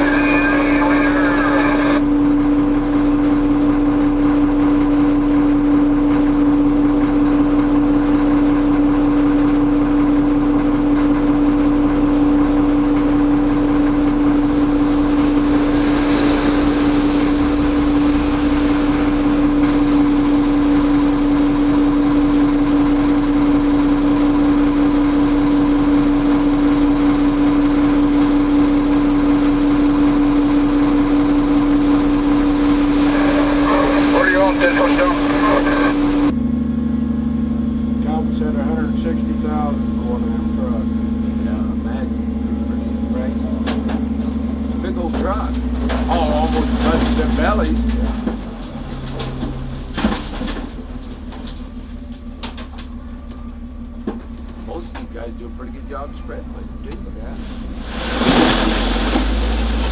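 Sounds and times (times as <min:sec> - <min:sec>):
rushing noise: 0:00.0 - 0:02.2, 0:14.2 - 0:21.3, 0:31.2 - 0:36.4
vehicle engine droning: 0:00.0 - 0:59.9.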